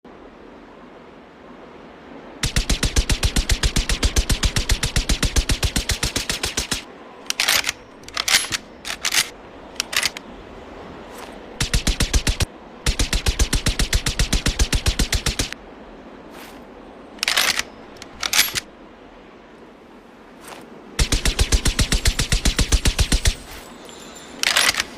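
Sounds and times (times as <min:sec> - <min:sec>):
suppressed submachine gun bursts: 0:02.4 - 0:10.2, 0:17.2 - 0:18.7, 0:24.4 - 0:24.9.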